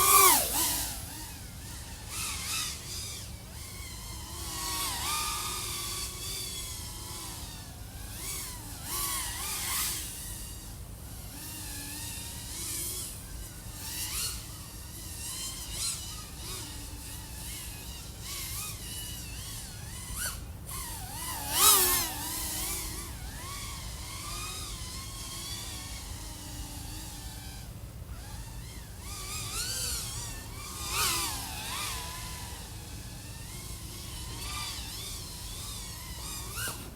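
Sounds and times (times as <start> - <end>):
drone motors whining: 0.0 - 36.9.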